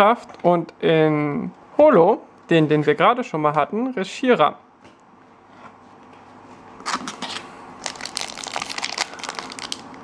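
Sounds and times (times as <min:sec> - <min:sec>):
foil wrapper crinkling: 0:06.8 - 0:10.0.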